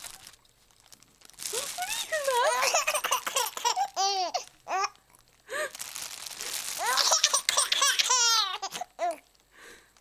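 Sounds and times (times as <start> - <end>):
plastic sheet crinkling: 0.0 - 10.0
baby laughing and squealing: 2.0 - 5.0, 6.8 - 9.2.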